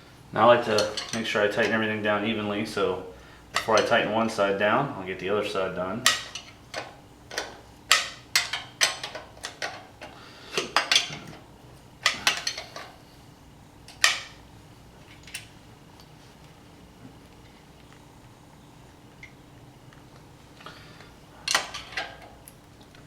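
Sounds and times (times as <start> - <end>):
metal tool clicking on bolts: 6.1 - 10.1.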